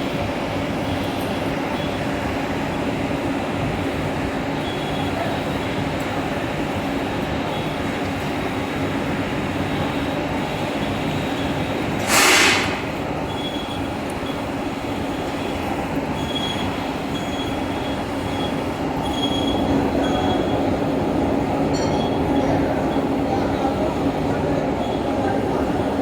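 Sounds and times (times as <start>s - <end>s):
short loud hiss: 12.0s - 12.9s.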